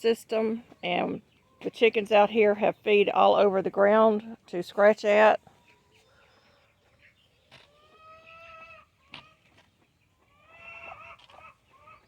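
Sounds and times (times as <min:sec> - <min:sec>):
chicken calling: 0:05.6 - 0:12.0.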